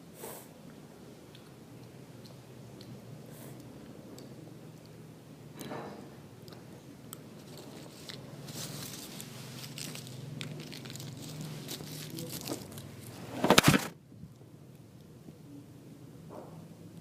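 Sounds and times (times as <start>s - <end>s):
foil wrapper crinkling: 7.4s - 12.8s.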